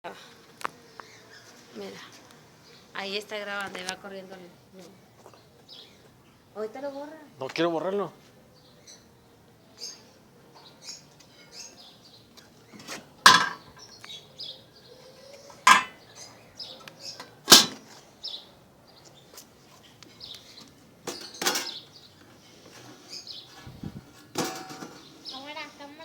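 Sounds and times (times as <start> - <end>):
metal dispenser clanking: 15.7 - 16.0, 17.5 - 17.8.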